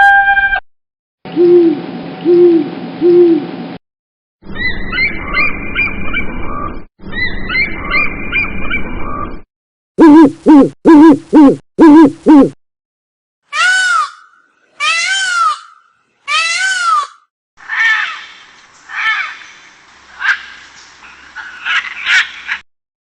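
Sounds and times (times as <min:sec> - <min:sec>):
bird chirping: 0:04.5 - 0:06.3, 0:07.0 - 0:08.8
loud animal calls: 0:13.5 - 0:19.4.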